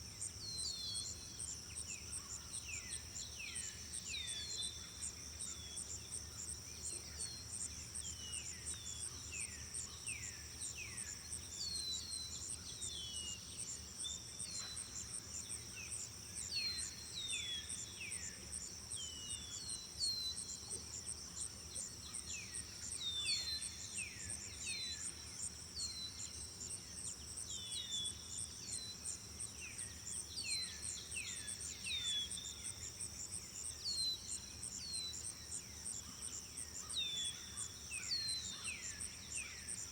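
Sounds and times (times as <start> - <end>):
crickets trilling: 14.6 - 39.9.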